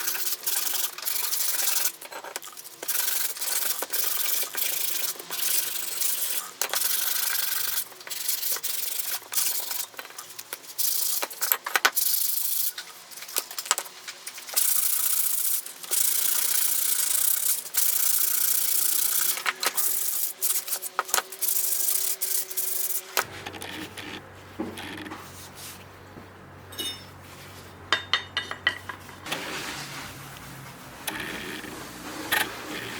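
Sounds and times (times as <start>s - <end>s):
hand sanding strokes: 0.0s - 11.4s, 12.0s - 23.3s, 29.2s - 31.0s.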